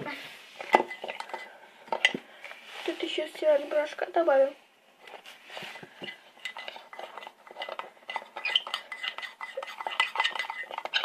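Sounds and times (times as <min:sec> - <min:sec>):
spoon stirring and clinking: 0:00.6 - 0:02.2, 0:06.0 - 0:11.0.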